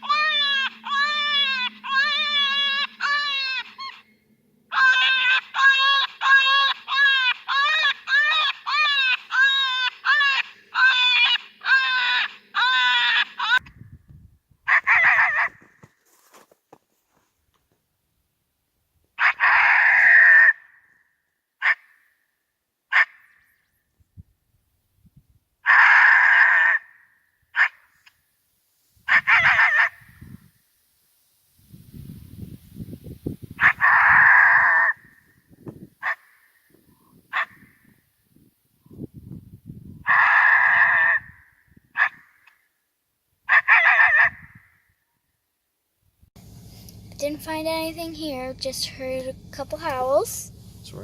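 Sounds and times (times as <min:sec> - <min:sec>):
electronic wailing animal cries: 0:00.0 - 0:04.1, 0:04.7 - 0:13.7, 0:14.7 - 0:15.6, 0:19.2 - 0:20.6, 0:25.7 - 0:26.9, 0:29.1 - 0:30.0, 0:33.6 - 0:35.1, 0:40.0 - 0:42.2, 0:43.5 - 0:44.6
high-pitched predator call notes: 0:00.0 - 0:13.6.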